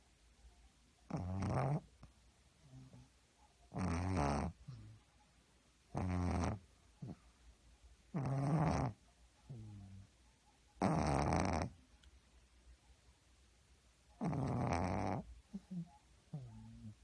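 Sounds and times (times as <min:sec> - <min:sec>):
dog snoring: 0:01.0 - 0:02.0, 0:03.7 - 0:05.0, 0:05.9 - 0:07.3, 0:08.1 - 0:10.1, 0:10.8 - 0:11.8, 0:14.2 - 0:17.0.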